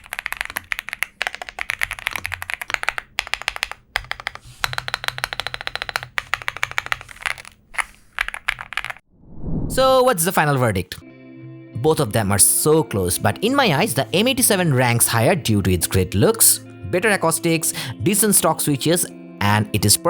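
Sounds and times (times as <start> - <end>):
mechanical keyboard typing: 0.0 - 9.0.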